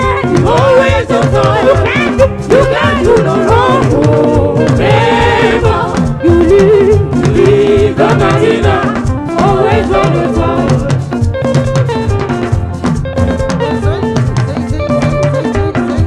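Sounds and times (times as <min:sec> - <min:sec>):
singers with choir: 0:00.0 - 0:11.1
band with drums: 0:00.0 - 0:16.0.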